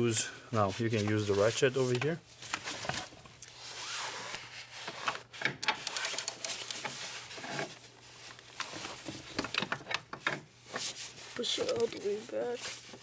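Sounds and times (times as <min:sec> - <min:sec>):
rustle of handling: 0:00.5 - 0:05.4, 0:06.0 - 0:13.0
hand ratchet clicking: 0:05.6 - 0:06.9.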